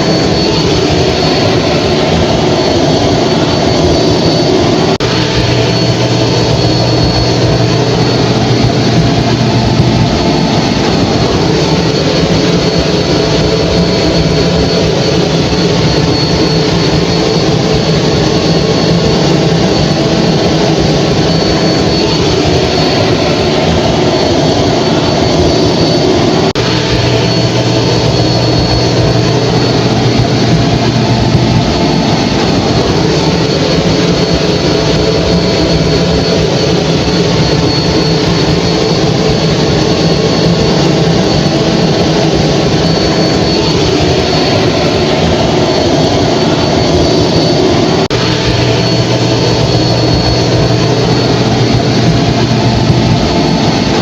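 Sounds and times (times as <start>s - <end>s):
hair dryer running: 0.0s - 39.0s.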